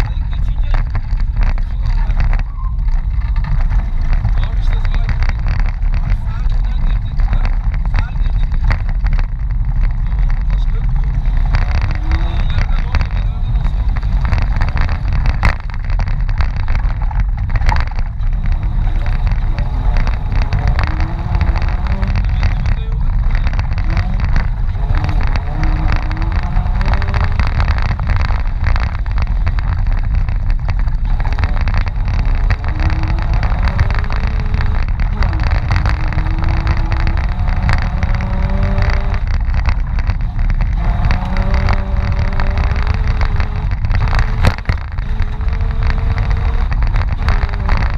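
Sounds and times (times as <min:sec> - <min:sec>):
knocks and rattles: 0:00.0 - 0:47.9
engine revving hard: 0:09.8 - 0:16.7, 0:17.8 - 0:30.4, 0:31.0 - 0:47.9.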